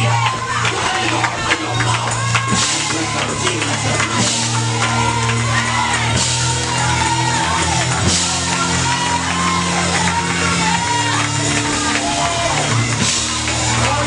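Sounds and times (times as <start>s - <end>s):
band playing sustained chords: 0.0s - 14.0s
voices shouting and singing: 0.0s - 14.0s.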